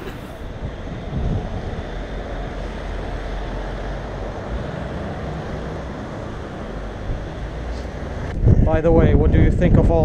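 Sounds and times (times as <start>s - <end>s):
wind buffeting microphone: 0.0s - 3.0s, 6.8s - 10.0s.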